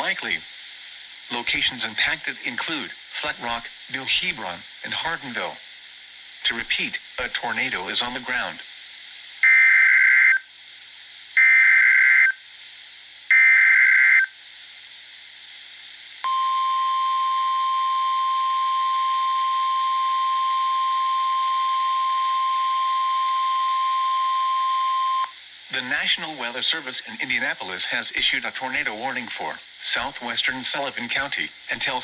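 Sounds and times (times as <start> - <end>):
steady warning alarm tone: 9.4 - 10.4, 11.4 - 12.4, 13.3 - 14.3, 16.2 - 25.4.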